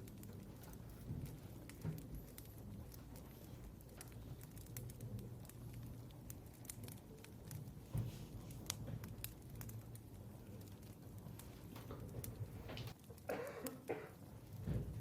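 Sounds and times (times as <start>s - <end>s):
faint clicks and taps: 0.0s - 15.0s
low room hum: 0.0s - 15.0s.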